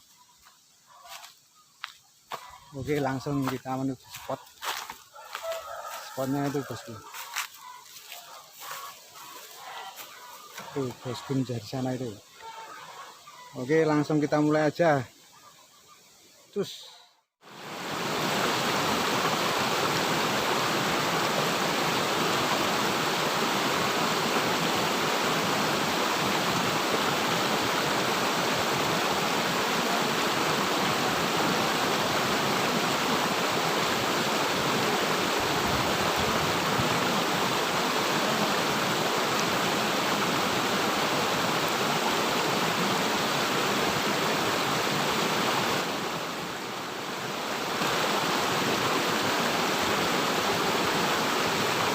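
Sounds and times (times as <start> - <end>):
river water rushing: 17.4 - 51.9.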